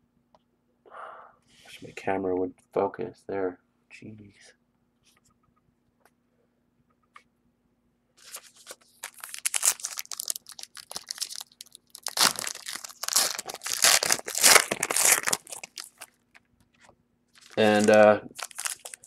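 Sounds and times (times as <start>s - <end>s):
plastic wrapping tearing and crinkling: 8.2s - 16.4s, 17.3s - 19.0s.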